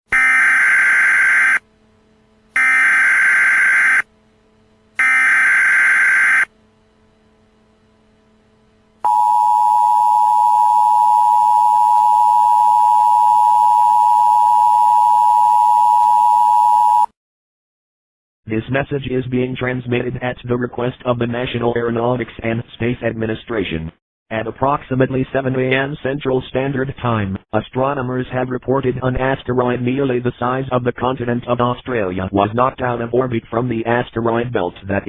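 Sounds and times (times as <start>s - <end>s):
two-tone attention signal: 2.6s - 4.0s, 5.0s - 6.5s, 9.0s - 17.1s.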